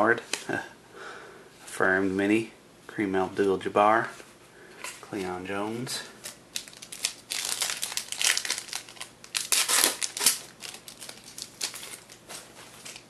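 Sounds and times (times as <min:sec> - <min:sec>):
card pack wrapper crinkling: 0:06.2 - 0:13.0.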